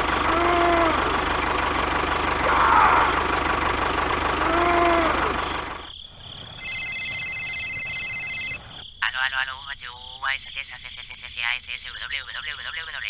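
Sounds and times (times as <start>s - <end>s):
small engine running: 0.0s - 5.8s
telephone ringing: 6.6s - 8.6s.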